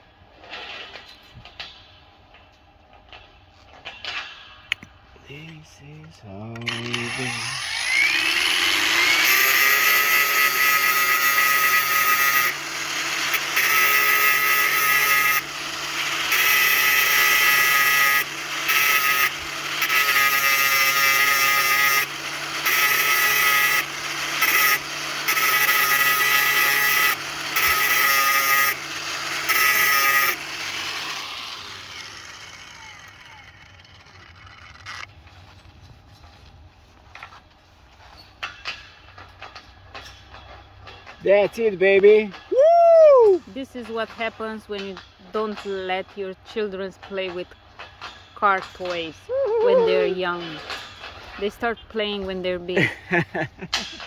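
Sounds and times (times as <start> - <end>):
power tool motor whining: 5.5 - 35.2, 48.6 - 52.1.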